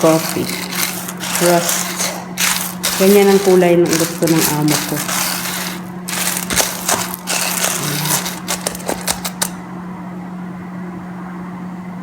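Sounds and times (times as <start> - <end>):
coffee beans rattling in container: 0.0 - 9.6.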